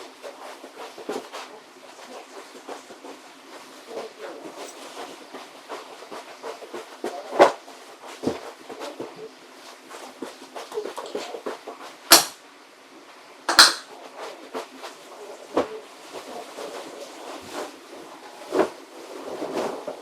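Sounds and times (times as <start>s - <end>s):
household objects knocking and clattering: 13.5s - 13.9s.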